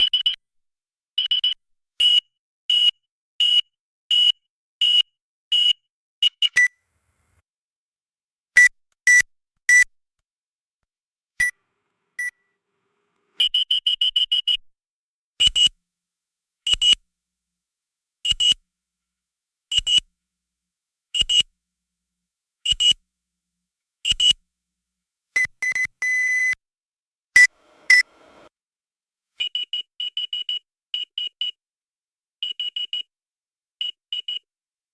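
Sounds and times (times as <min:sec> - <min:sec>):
barcode scanner beeping: 0:19.7 - 0:20.0.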